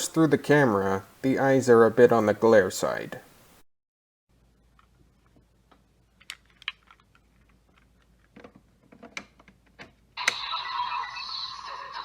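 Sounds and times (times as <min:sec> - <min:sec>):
toy electronic sound effect: 0:10.2 - 0:12.0.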